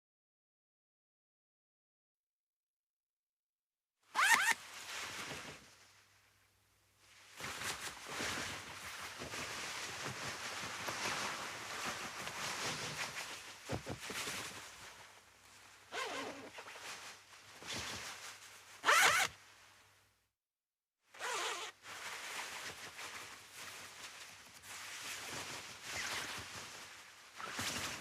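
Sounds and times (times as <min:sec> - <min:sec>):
zipper pull: 0:04.2 - 0:04.6, 0:15.9 - 0:16.8, 0:18.8 - 0:19.3, 0:21.2 - 0:21.8, 0:25.9 - 0:26.3
nylon jacket rustling: 0:04.2 - 0:05.6, 0:16.0 - 0:19.3, 0:21.2 - 0:28.0.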